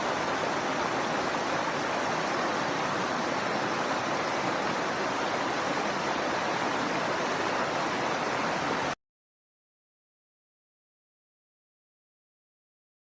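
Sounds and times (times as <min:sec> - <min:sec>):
river water rushing: 0:00.0 - 0:09.0.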